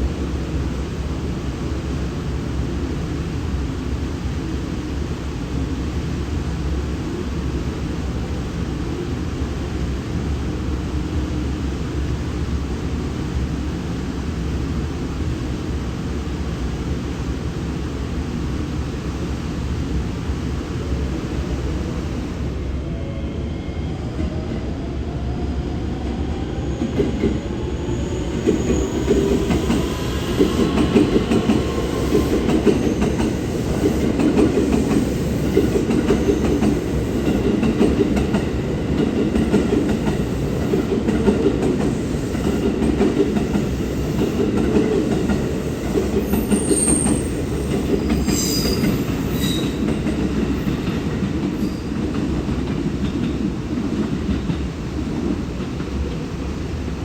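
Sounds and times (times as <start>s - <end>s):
train wheels rumbling on rail: 0.0s - 57.0s
high-pitched wheel squeals: 48.2s - 49.8s.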